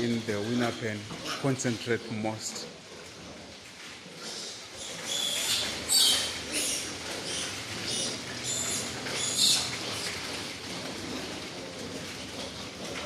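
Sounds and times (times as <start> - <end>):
piglets squealing: 4.2 - 10.3.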